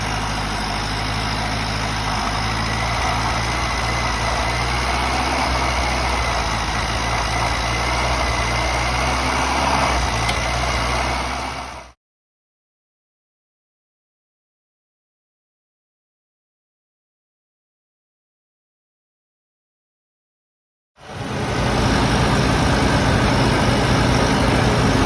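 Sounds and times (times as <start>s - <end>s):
pickup engine idling: 0.0s - 11.9s, 21.1s - 25.0s.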